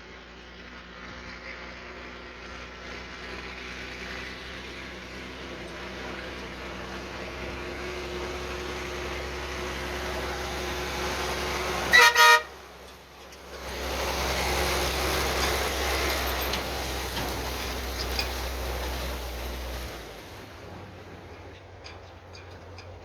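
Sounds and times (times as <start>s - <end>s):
truck diesel engine running: 0.0s - 23.0s
loud horn blasts: 11.6s - 12.7s.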